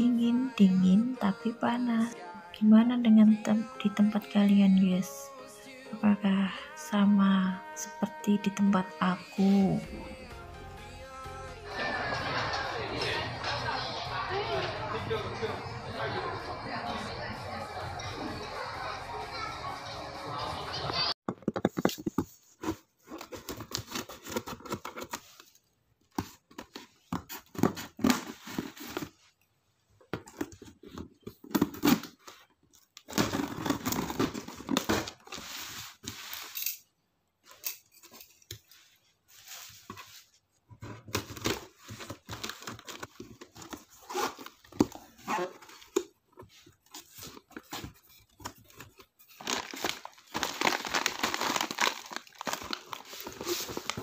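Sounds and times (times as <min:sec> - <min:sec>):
packaging tearing and crinkling: 0:48.4 - 0:54.0.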